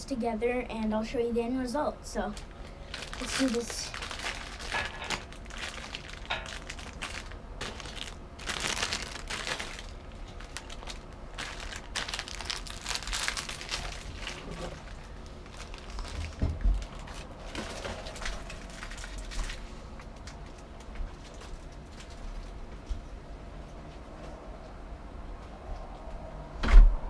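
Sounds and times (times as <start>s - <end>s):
plastic packaging crinkling: 2.4s - 22.6s
low thump: 26.6s - 27.0s.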